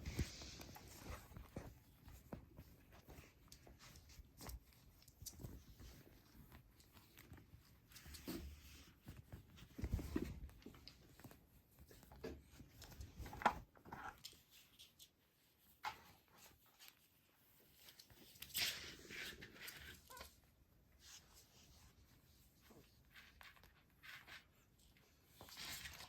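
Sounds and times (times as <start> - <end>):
kitten scuffling with fish: 0.0 - 26.0.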